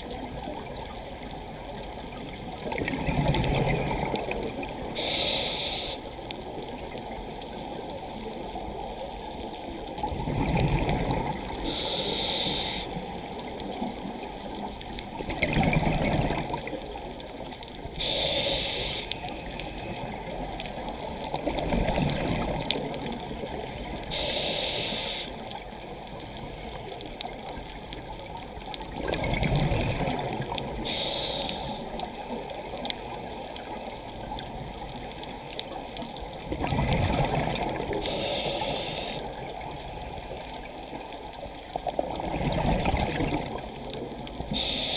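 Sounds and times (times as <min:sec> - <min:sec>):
gurgling exhaled bubbles: 0:00.0 - 0:05.2, 0:10.0 - 0:18.2, 0:18.8 - 0:25.7, 0:27.2 - 0:44.9
rush of water: 0:00.0 - 0:44.9
regulator inhalation hiss: 0:05.0 - 0:06.2, 0:11.6 - 0:13.1, 0:18.0 - 0:19.4, 0:24.1 - 0:25.4, 0:30.8 - 0:32.0, 0:38.0 - 0:39.3, 0:44.5 - 0:44.9.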